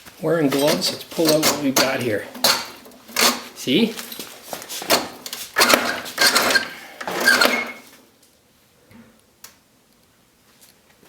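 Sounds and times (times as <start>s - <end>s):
winch cable rasping and rattling: 0.5s - 7.9s.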